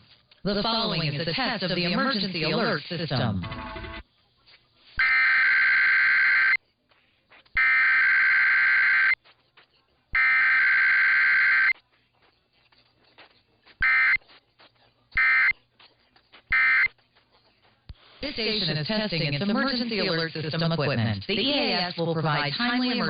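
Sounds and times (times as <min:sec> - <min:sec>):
raspy data tone bursts: 0:10.2 - 0:11.8, 0:13.8 - 0:14.2, 0:15.2 - 0:15.6, 0:16.5 - 0:16.9.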